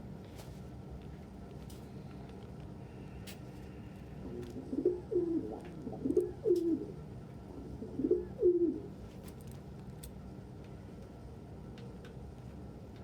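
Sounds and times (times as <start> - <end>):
pigeons cooing: 4.2 - 9.0.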